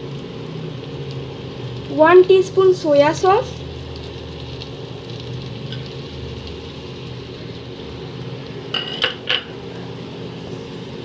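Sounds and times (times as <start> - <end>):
food sizzling in a pan: 0.0 - 11.0
metal spoon clinking on pan: 8.7 - 9.5.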